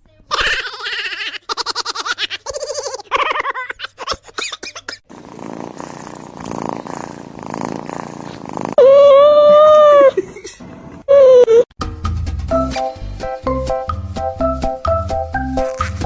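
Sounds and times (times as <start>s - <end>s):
cat purring: 5.1s - 8.9s.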